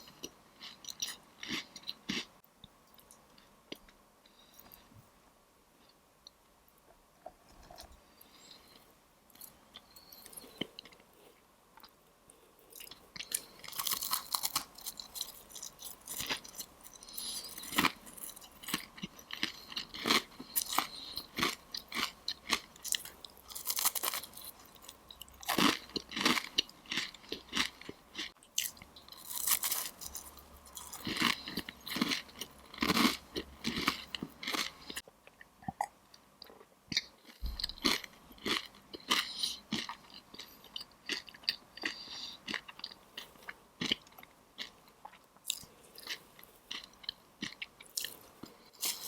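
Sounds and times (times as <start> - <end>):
crunchy pastry chewing: 0.0 - 2.3, 12.6 - 35.0, 36.4 - 49.0.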